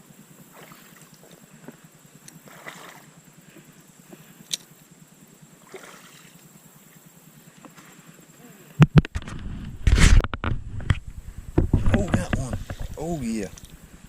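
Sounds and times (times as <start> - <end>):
creek water sloshing: 0.4 - 4.4, 5.5 - 8.0.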